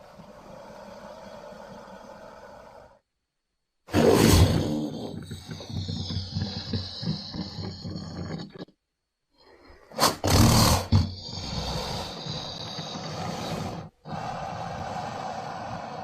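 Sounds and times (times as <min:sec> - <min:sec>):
creature growl: 0:03.9 - 0:08.7, 0:10.0 - 0:16.0
creature roar: 0:03.9 - 0:08.7, 0:10.0 - 0:16.0.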